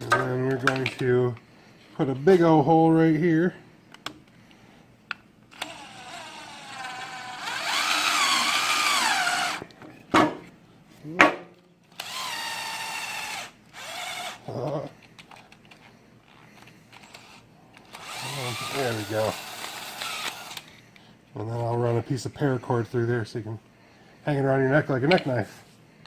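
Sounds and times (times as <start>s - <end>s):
power drill boring through plastic: 5.5s - 9.7s, 11.9s - 14.4s, 17.0s - 20.7s.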